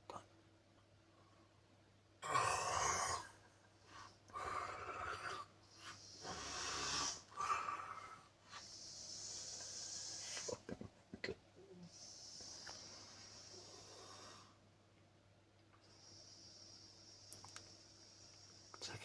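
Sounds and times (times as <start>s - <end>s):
man snoring heavily: 2.2s - 3.4s, 4.4s - 8.2s.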